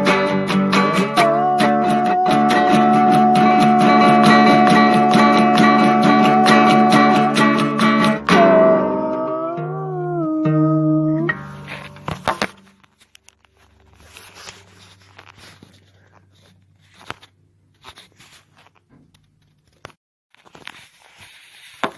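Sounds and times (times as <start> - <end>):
acoustic guitar chord: 0.0 - 9.7
rustling: 11.4 - 21.9
clicks and scrapes: 11.6 - 21.9.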